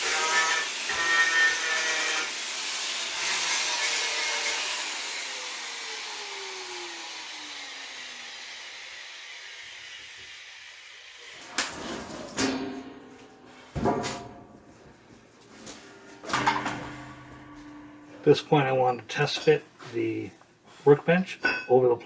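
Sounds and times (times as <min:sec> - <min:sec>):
angle grinder spinning down: 0:04.0 - 0:11.1.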